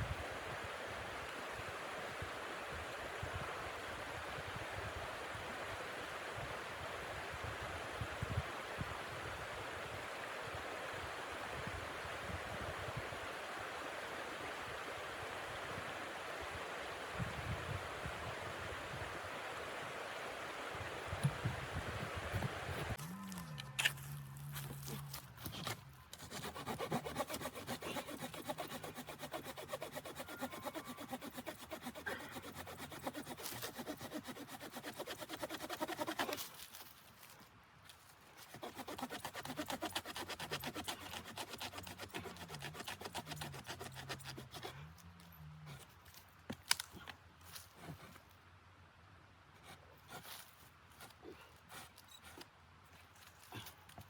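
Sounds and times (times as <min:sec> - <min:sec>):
hand saw cutting wood: 0:23.8 - 0:36.6, 0:38.4 - 0:45.1.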